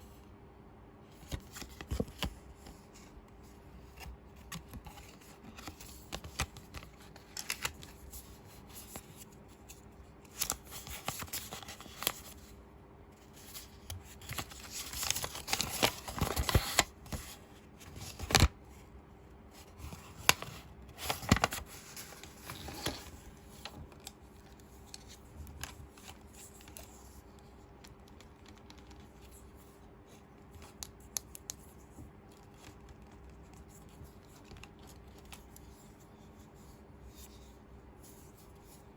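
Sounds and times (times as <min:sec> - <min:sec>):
packaging rustling and crinkling: 0:04.6 - 0:09.3, 0:13.3 - 0:18.5, 0:19.5 - 0:27.0.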